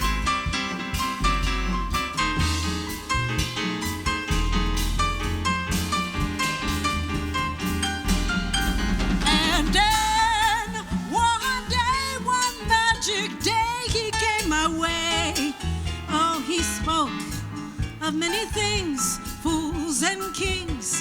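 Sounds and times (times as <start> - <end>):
jazz band playing ballad: 0.0 - 21.0
person singing with vibrato: 9.0 - 17.2.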